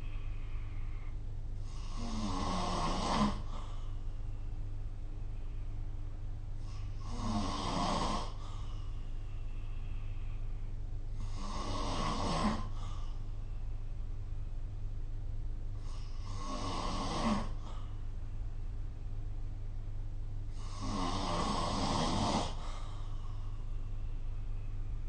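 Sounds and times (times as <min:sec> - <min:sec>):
person snoring: 0:00.0 - 0:03.7, 0:06.6 - 0:08.8, 0:11.2 - 0:13.1, 0:15.8 - 0:17.9, 0:20.5 - 0:22.8
steady low hum: 0:00.0 - 0:25.0.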